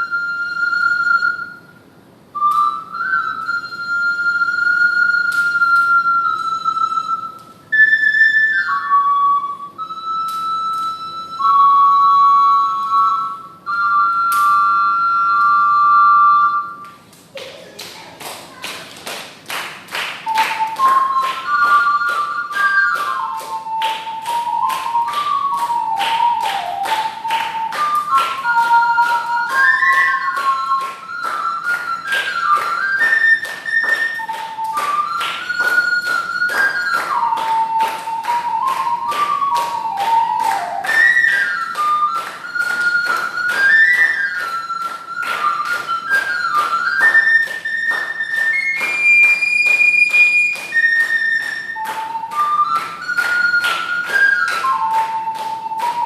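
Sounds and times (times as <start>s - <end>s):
ocarina melody: 0.0s - 17.7s, 19.9s - 56.0s
hand claps: 4.7s - 7.5s, 9.8s - 11.6s, 14.1s - 14.7s, 16.8s - 56.0s.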